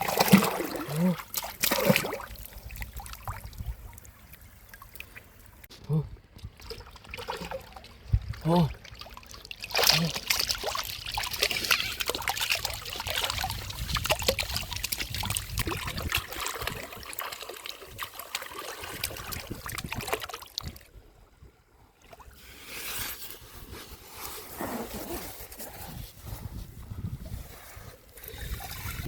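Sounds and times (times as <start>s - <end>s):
water splashing and trickling: 0.0s - 23.1s, 26.8s - 29.0s.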